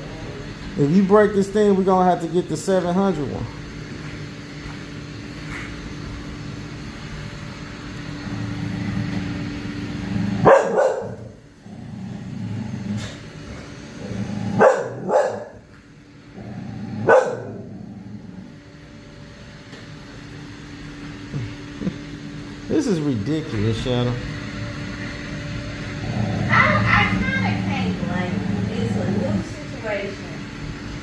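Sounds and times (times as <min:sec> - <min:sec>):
steady hum: 0:00.0 - 0:31.0
dog barking: 0:10.4 - 0:11.4, 0:14.6 - 0:15.6, 0:17.0 - 0:17.7.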